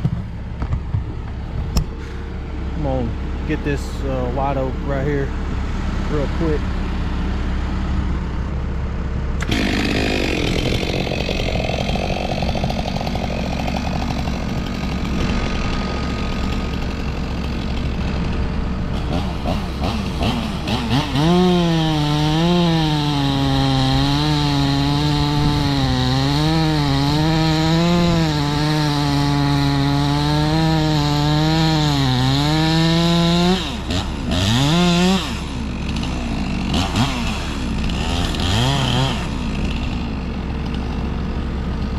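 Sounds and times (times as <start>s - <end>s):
chainsaw cutting wood: 9.4s - 41.9s.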